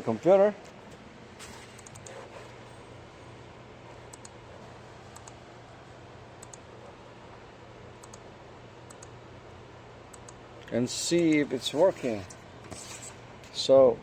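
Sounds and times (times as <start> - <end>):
steady low hum: 0.0 - 14.0
computer mouse clicks: 1.8 - 2.2, 4.1 - 4.4, 5.1 - 5.4, 6.4 - 6.6, 8.0 - 8.2, 8.9 - 9.2.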